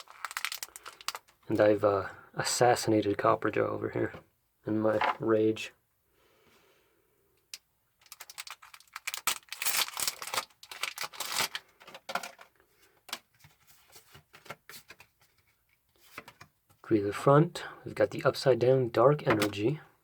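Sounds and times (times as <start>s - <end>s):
foil wrapper tearing and crinkling: 0.0s - 1.4s, 8.0s - 11.8s.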